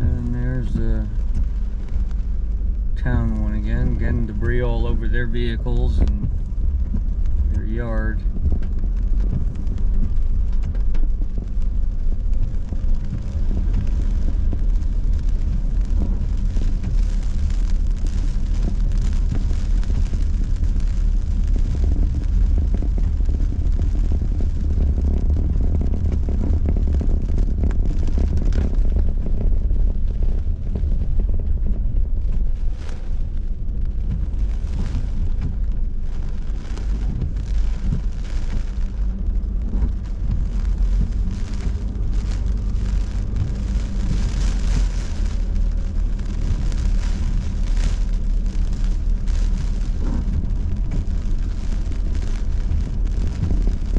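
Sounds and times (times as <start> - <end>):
car rumble on wet road: 0.0 - 53.9
tyre and rain noise: 0.0 - 53.9.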